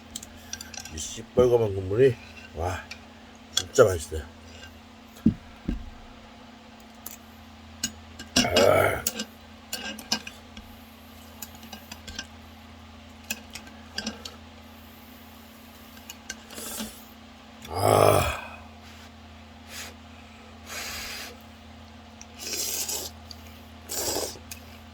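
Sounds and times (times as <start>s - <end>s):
slurping noodles: 22.3s - 24.6s.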